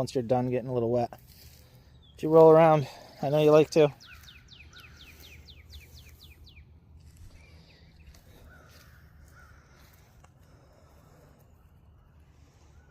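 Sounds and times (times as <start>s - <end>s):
birds chirping: 0.0s - 12.9s
steady low rumble: 4.1s - 12.8s.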